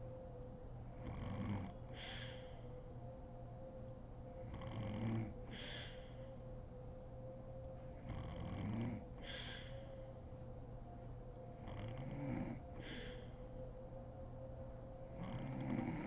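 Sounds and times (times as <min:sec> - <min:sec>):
woman snoring: 0:11.6 - 0:12.6, 0:15.2 - 0:16.0.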